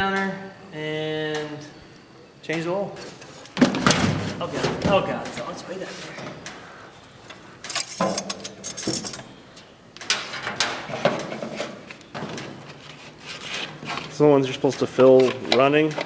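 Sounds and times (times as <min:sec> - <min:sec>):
tools clicking and knocking: 0:07.6 - 0:09.3.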